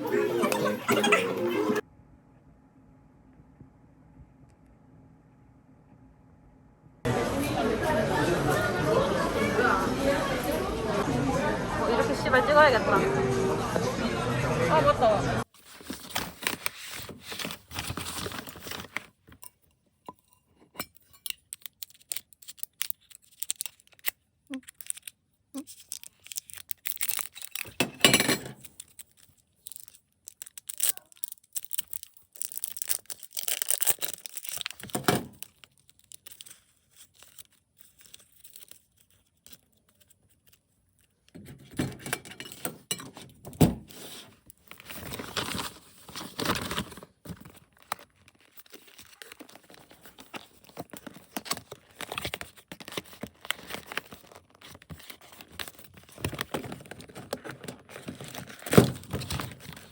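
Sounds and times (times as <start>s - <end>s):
packaging tearing and crinkling: 15.6s - 19.2s, 21.3s - 41.1s, 43.9s - 59.9s.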